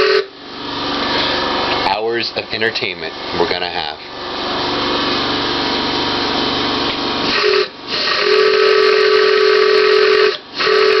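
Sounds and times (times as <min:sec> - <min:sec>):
train whistle blasts: 0:00.0 - 0:00.4, 0:07.3 - 0:11.0
compressed air hissing: 0:07.2 - 0:08.8.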